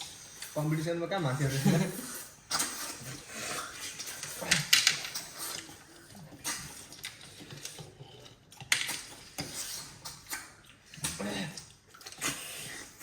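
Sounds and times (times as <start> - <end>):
people slurping snails: 0.0 - 13.0.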